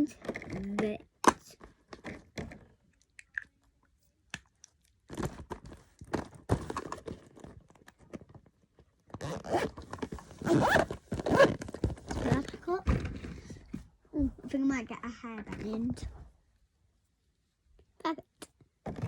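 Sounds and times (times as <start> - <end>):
packaging rustling: 9.1 - 13.2
items scraping: 9.1 - 14.4.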